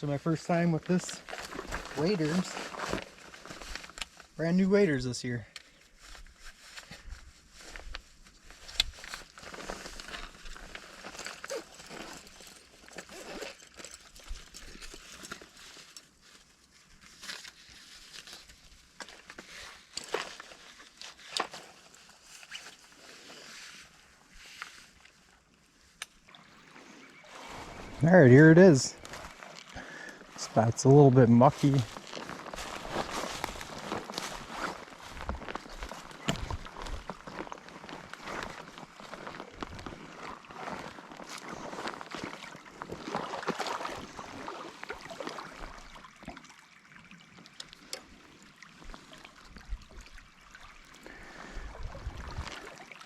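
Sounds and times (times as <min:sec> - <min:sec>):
faint rustling and handling: 0:00.0 - 0:46.3
stream trickling: 0:07.1 - 0:53.0
water sloshing around wading legs: 0:31.6 - 0:53.0.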